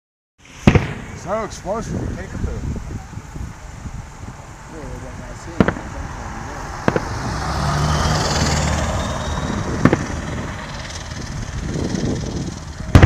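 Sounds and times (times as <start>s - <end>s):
firework bangs: 0.4s - 2.3s, 5.0s - 13.0s
vehicle passing by: 4.6s - 13.0s.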